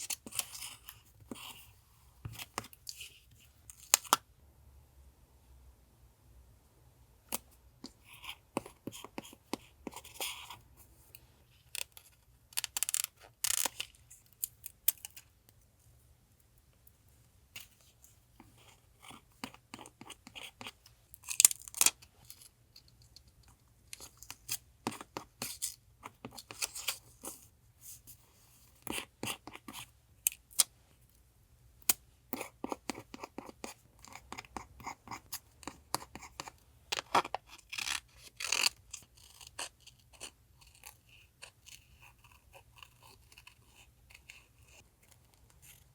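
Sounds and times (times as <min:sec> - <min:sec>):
scratching on paper: 0:17.6 - 0:20.8, 0:24.0 - 0:29.9, 0:32.3 - 0:45.9.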